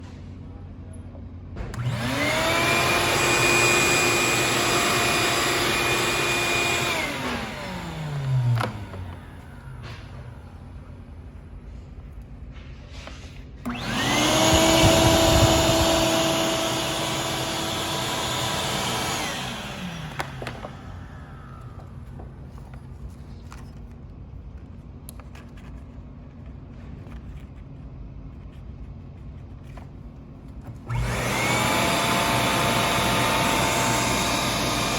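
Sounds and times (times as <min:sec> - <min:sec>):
shop vacuum motor whining: 0:01.7 - 0:11.6, 0:13.6 - 0:23.6, 0:30.7 - 0:34.9.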